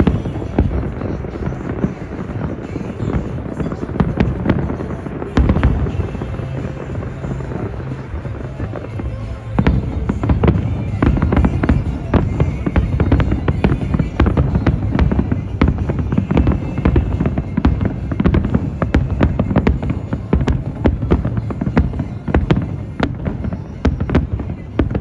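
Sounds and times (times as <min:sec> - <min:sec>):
fireworks bursting: 0:00.0 - 0:25.0.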